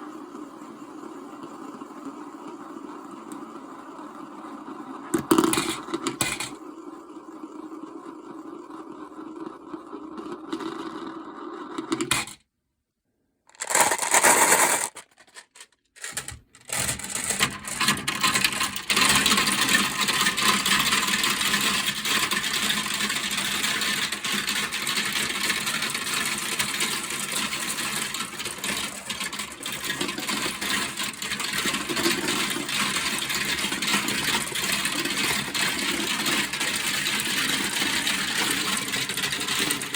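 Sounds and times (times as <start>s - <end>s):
glass marbles rolling and clacking: 5.2s - 6.6s, 13.5s - 19.8s.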